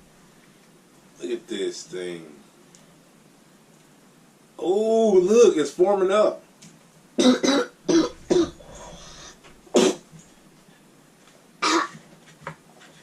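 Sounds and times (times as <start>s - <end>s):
person coughing: 7.2s - 8.8s, 9.8s - 10.0s, 11.6s - 12.0s.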